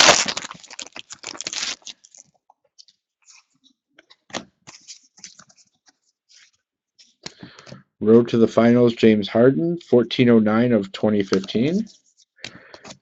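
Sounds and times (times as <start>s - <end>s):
card pack wrapper crinkling: 0.0s - 2.4s
cards being handled: 1.3s - 7.8s, 11.1s - 13.0s.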